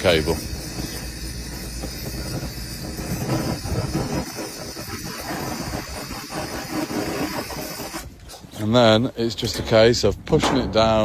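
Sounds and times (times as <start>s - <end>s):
gas torch flame hissing: 0.0s - 8.3s.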